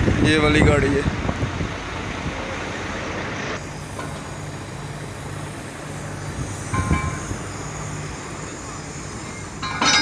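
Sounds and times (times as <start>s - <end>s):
truck engine idling: 1.1s - 10.0s
metallic clink and thud: 9.6s - 10.0s.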